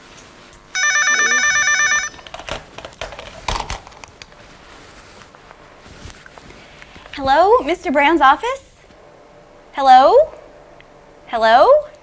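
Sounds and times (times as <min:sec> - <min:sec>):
telephone ringing: 0:00.8 - 0:02.4.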